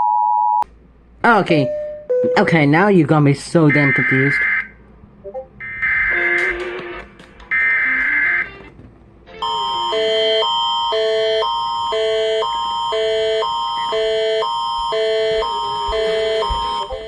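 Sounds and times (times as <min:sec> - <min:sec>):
electronic alert tone: 0:09.4 - 0:17.0.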